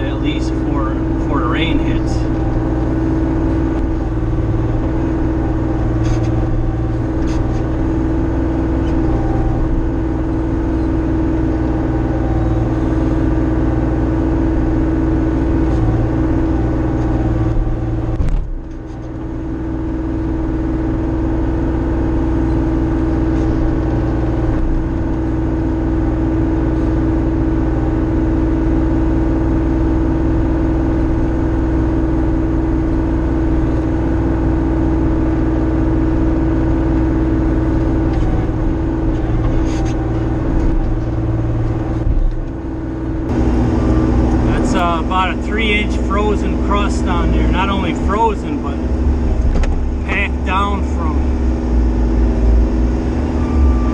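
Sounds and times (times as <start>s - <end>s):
diesel engine running under load: 0.0s - 53.9s.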